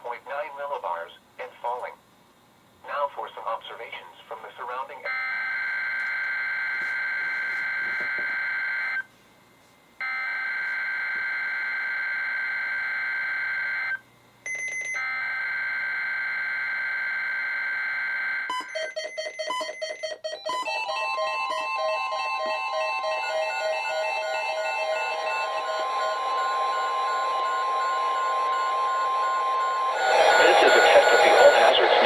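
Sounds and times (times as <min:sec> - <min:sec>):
steady warning alarm tone: 0:05.1 - 0:09.1, 0:10.0 - 0:32.0
two-tone digital data bursts: 0:26.4 - 0:32.0
high beep: 0:26.8 - 0:32.0.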